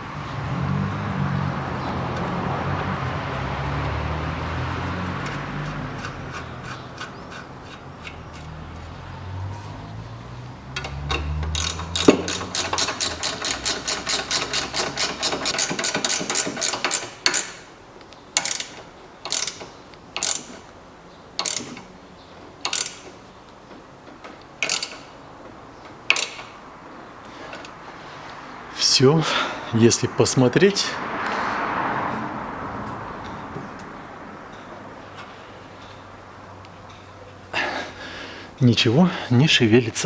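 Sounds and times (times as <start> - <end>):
ratchet wrench clicking: 10.8 - 17.7, 18.4 - 20.7, 21.4 - 21.9, 22.6 - 23.2, 24.6 - 25.1, 26.1 - 26.5.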